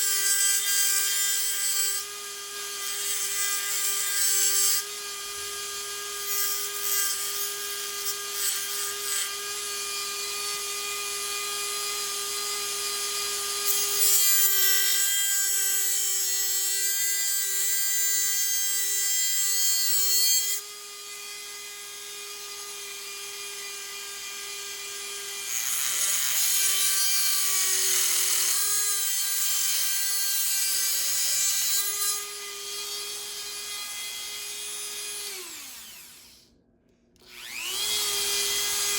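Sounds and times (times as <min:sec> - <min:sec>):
rotary tool whining: 0:19.4 - 0:36.5, 0:37.2 - 0:38.9.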